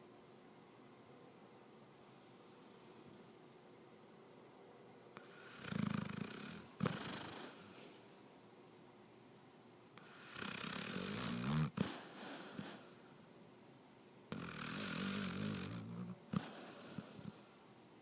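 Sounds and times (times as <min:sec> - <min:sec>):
pet snoring: 0:05.2 - 0:07.8, 0:10.0 - 0:12.9, 0:14.3 - 0:17.5.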